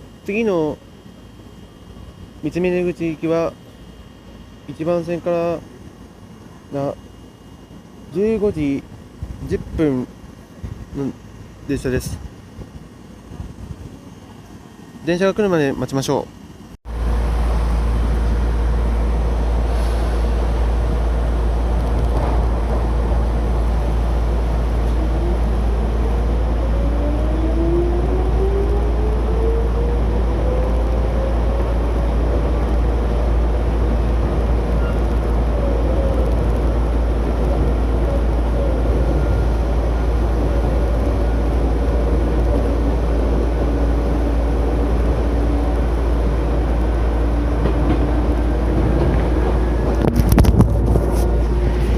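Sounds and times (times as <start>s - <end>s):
electric train motor whine: 16.5s - 51.9s.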